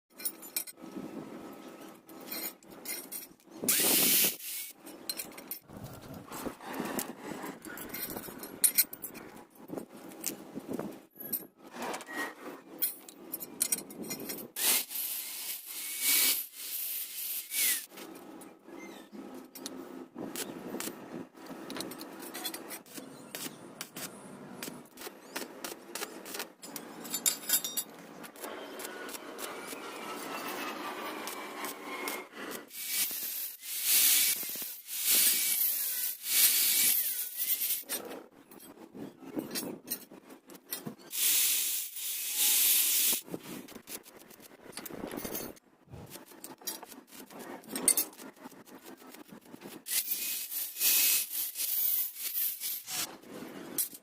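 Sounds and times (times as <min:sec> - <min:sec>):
hand tool scraping workpiece: 0:21.9 - 0:38.2.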